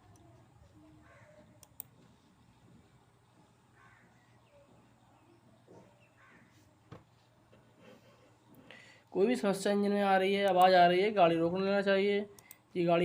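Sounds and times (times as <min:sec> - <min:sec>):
faint low hum: 0:00.0 - 0:13.0
faint bird calls: 0:00.2 - 0:06.9.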